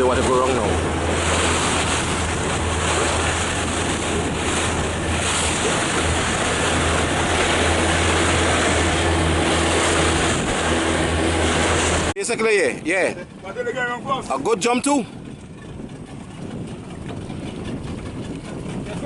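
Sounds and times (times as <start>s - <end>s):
low engine hum: 0.0s - 12.2s
rushing water from boat: 0.0s - 19.0s
wind on microphone: 0.0s - 19.0s.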